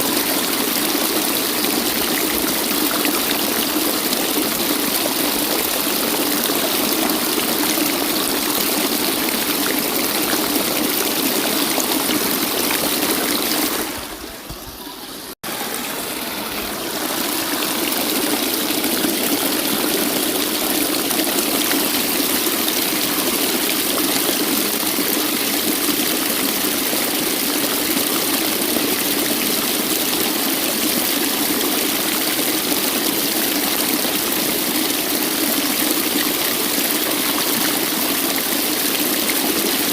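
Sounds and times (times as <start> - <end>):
waterfall rushing: 0.0 - 27.9.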